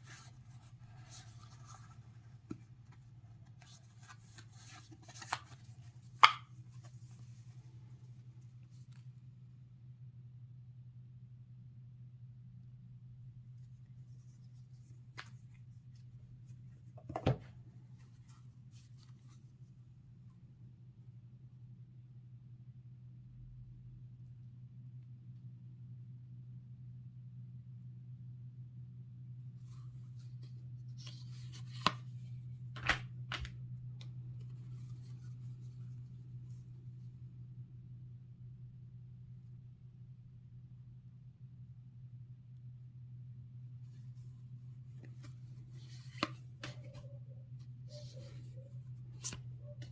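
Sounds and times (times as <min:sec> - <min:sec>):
card deck rustles and taps: 0:03.6 - 0:07.0, 0:31.0 - 0:32.1, 0:32.8 - 0:33.6.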